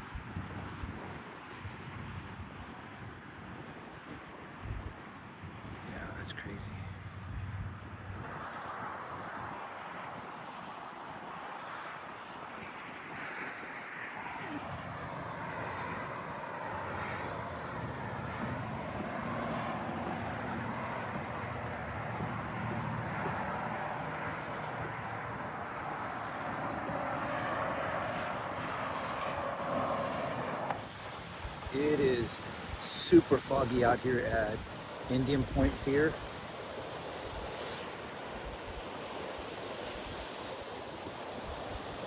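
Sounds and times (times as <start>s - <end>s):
distant engine drone: 12.4s - 42.0s.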